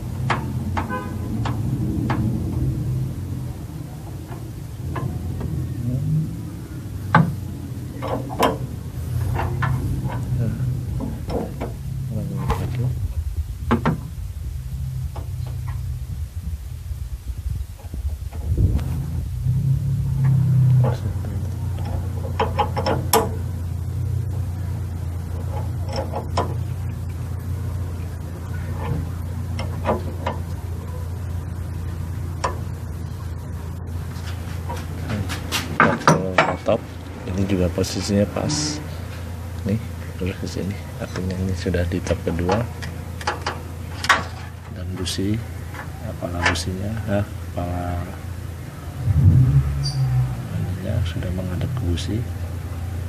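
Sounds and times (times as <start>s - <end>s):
low engine-like hum: 0.0s - 53.0s
hand tools clicking and knocking: 21.8s - 23.4s.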